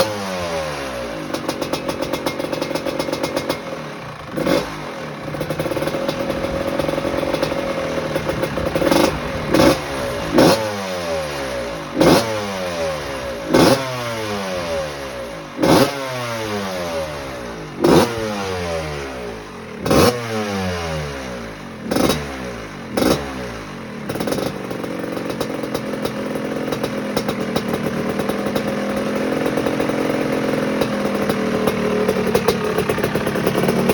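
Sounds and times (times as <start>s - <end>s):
motorcycle engine idling: 0.0s - 33.9s
two-stroke motorcycle engine revving: 0.0s - 33.9s.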